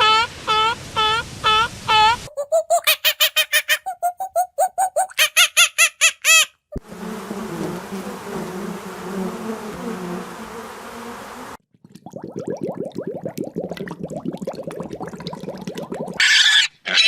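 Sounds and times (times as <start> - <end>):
insect buzzing: 6.8 - 11.6.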